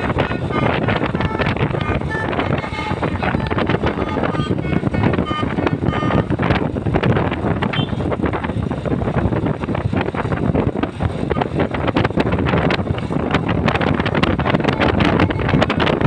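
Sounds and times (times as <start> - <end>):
brief high tone: 0.0 - 6.3
vehicle rumble: 0.0 - 16.0
wind buffeting microphone: 0.0 - 16.0.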